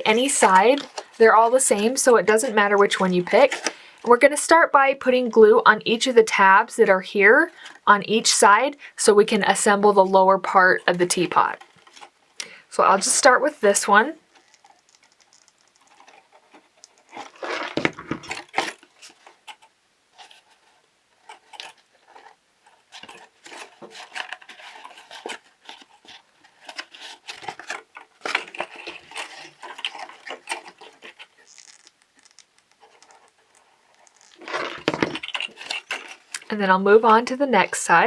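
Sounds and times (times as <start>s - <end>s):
paper crinkling and rustling: 0.0s - 4.0s, 11.5s - 12.3s, 14.3s - 36.5s.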